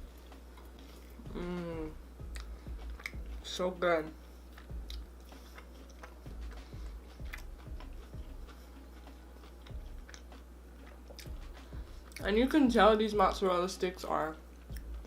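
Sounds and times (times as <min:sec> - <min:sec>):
person chewing: 0:00.0 - 0:03.5, 0:04.2 - 0:12.2.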